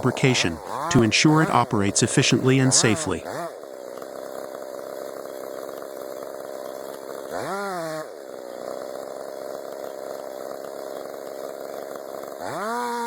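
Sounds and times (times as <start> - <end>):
chainsaw running: 0.0 - 13.0.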